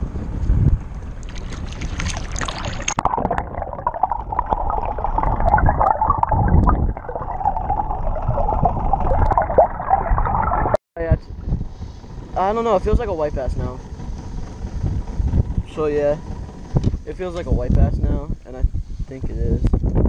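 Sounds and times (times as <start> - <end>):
wind rumble on microphone: 0.0 - 20.0
water gurgling and splashing: 1.2 - 10.8.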